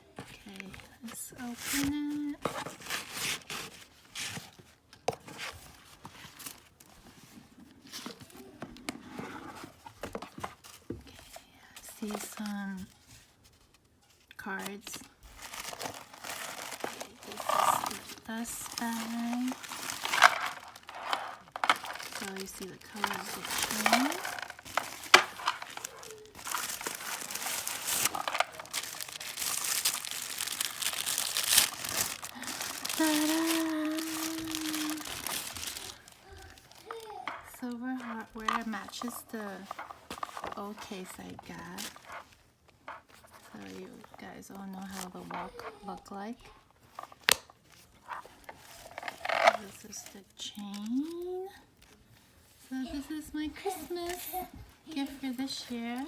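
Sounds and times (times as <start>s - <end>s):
wrapping paper rustling and tearing: 1.4s - 4.6s, 12.0s - 42.4s, 46.9s - 56.0s
handling clicks and knocks: 15.5s - 36.1s.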